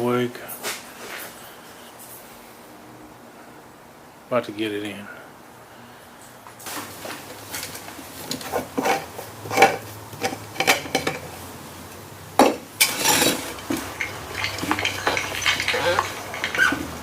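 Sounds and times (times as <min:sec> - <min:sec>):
metal pieces clinking: 0:12.8 - 0:17.0.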